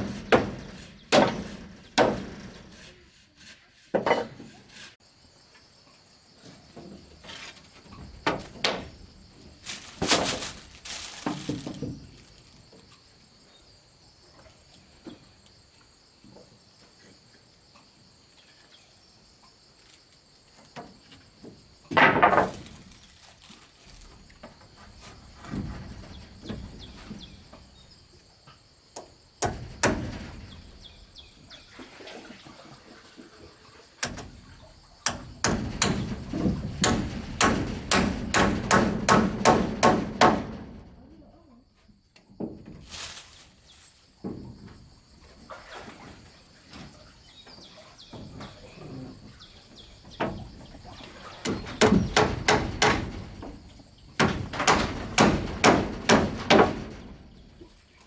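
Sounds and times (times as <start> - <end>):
hand tools chopping wood: 0.0 - 3.0, 9.7 - 12.0, 35.0 - 40.6, 51.4 - 53.4, 54.2 - 57.1
insects droning: 0.0 - 58.0.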